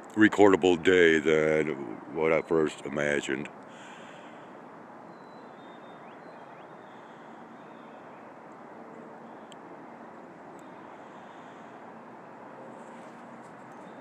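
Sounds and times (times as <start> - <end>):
distant car traffic: 0.0 - 14.0.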